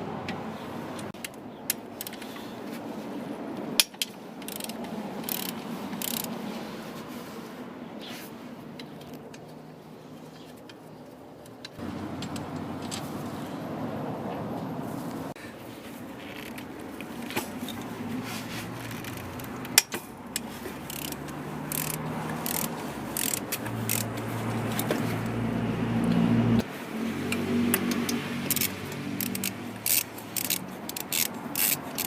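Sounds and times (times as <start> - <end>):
ratchet wrench clicking: 3.8 - 6.3, 18.8 - 24.9, 27.7 - 32.0.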